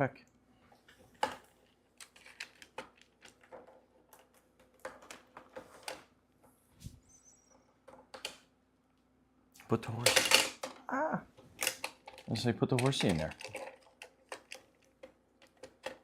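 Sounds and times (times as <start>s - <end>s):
plastic toy tiles clicking: 11.6s - 16.0s.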